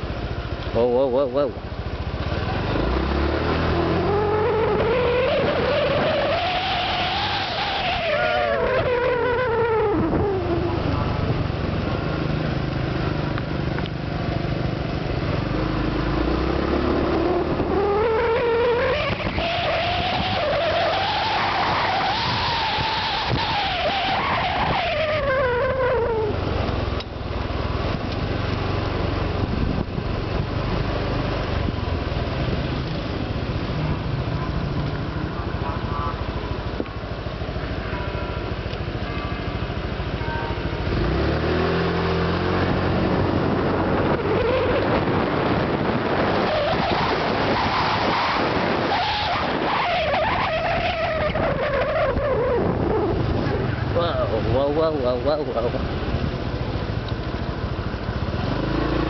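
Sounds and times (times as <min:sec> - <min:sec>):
scooter engine running: 0:00.0 - 0:06.4, 0:09.4 - 0:18.2, 0:25.8 - 0:44.2, 0:50.2 - 0:59.0
wind and road noise: 0:00.0 - 0:59.0
gliding whines: 0:03.3 - 0:11.5, 0:15.8 - 0:26.4, 0:41.8 - 0:54.3.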